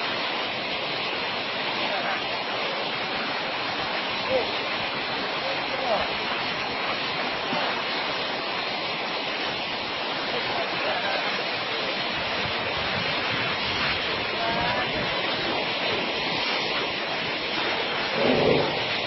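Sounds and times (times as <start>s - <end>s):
steady rushing noise: 10.9s - 19.0s.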